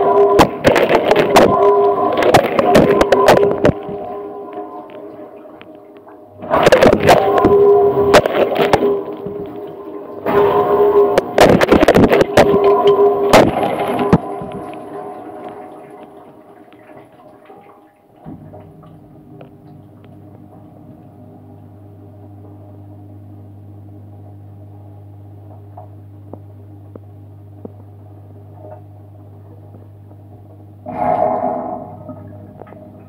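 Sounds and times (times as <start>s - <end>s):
water sloshing and spraying: 0.0s - 20.5s
dishwasher pump hum: 0.0s - 33.0s.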